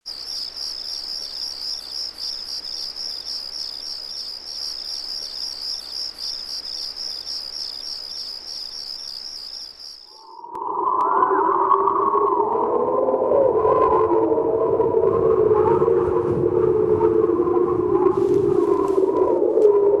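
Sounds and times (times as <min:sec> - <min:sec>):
crickets chirping: 0:00.0 - 0:10.6.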